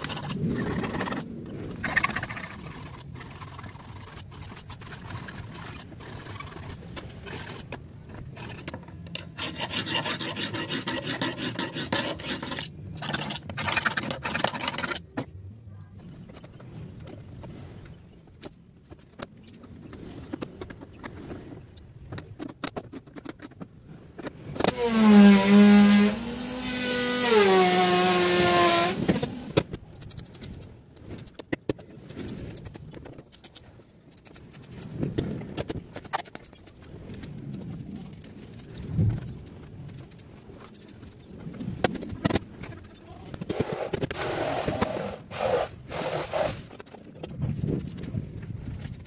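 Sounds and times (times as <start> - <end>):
hand filing rasping strokes: 2.0 - 15.0, 24.6 - 30.6, 43.4 - 48.1.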